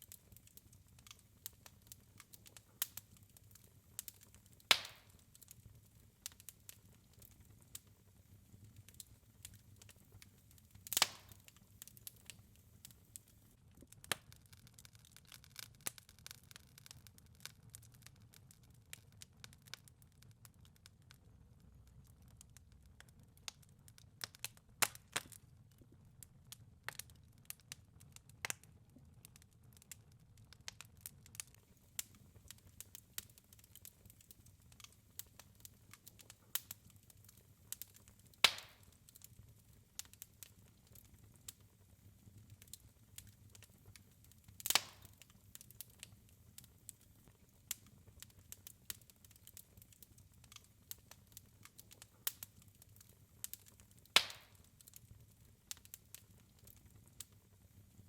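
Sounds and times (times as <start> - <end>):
wood fire crackling: 0.0 - 58.0
loud fire pops: 4.7 - 5.2, 10.8 - 11.5, 37.7 - 39.0, 44.6 - 45.3, 54.2 - 54.7.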